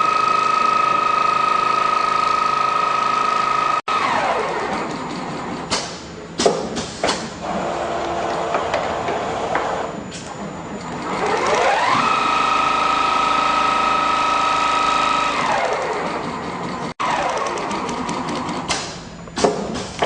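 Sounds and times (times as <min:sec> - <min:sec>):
sewing machine motor whining: 0:10.9 - 0:18.7.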